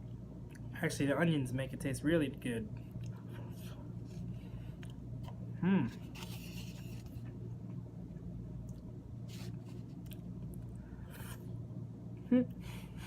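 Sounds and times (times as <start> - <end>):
low hum: 0.0 - 13.0
person chewing food: 8.6 - 11.4.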